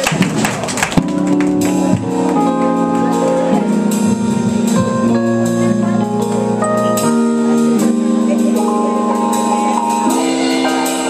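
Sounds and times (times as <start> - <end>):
drum and cymbal hits: 0.0 - 11.0
keyboard chords: 0.0 - 11.0.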